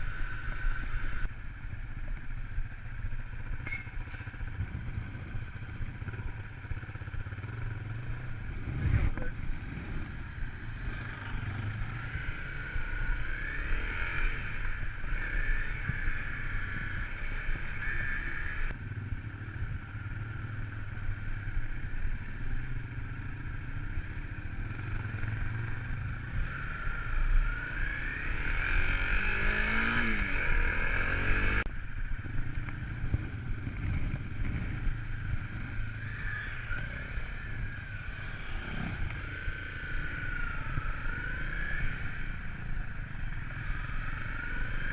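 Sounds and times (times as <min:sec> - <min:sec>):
off-road vehicle engine revving: 0:06.0 - 0:18.8, 0:24.5 - 0:31.7, 0:33.0 - 0:44.9.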